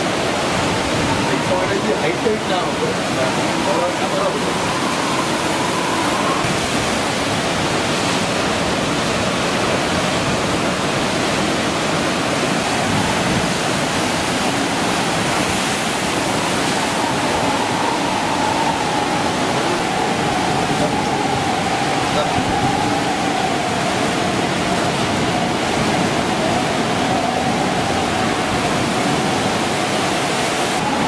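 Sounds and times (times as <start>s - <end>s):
stormy sea roaring: 0.0s - 31.0s
strong wind: 0.0s - 31.0s.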